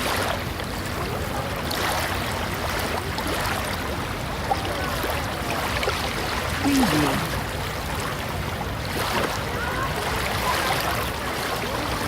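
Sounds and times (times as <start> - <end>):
surf washing: 0.0 - 12.0
faint scattered voices: 2.7 - 7.5.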